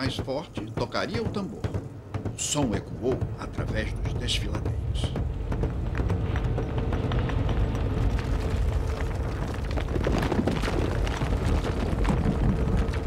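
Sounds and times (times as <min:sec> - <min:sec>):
large drum beaten rapidly: 0:00.0 - 0:08.4.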